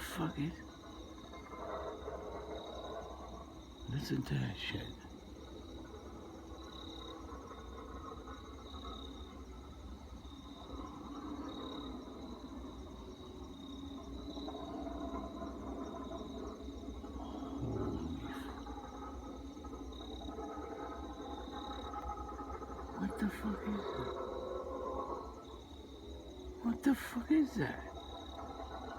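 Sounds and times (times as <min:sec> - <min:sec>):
insects chirping: 0:00.0 - 0:28.9
rumbling droning noise: 0:15.5 - 0:19.0.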